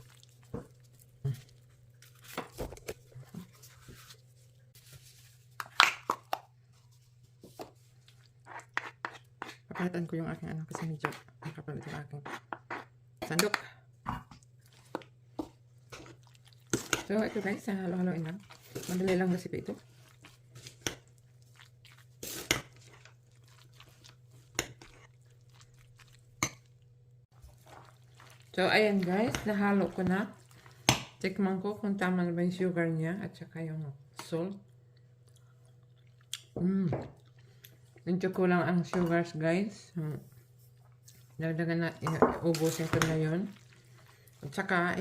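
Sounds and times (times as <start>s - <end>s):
ladle stirring thick salad: 0.0s - 6.2s, 14.4s - 31.0s, 40.4s - 44.9s.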